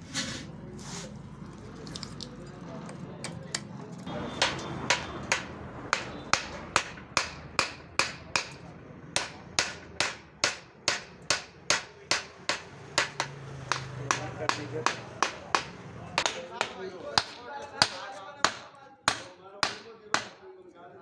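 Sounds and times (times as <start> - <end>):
hammer striking metal: 4.4 - 8.6, 9.2 - 20.4.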